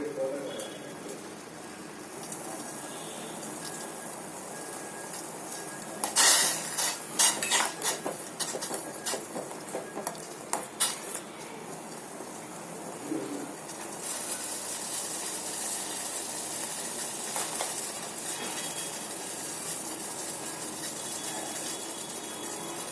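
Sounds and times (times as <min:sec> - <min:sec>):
hot pan hissing: 0:00.0 - 0:22.9
metal spoon scraping a pot: 0:06.1 - 0:08.6.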